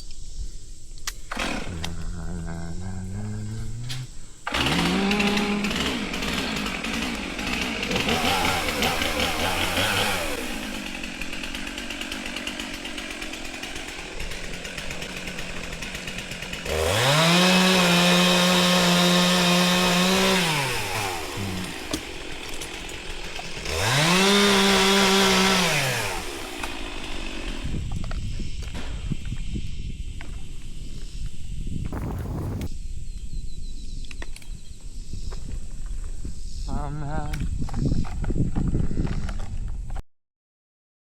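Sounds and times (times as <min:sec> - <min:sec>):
chainsaw revving and idling: 0:01.3 - 0:28.1.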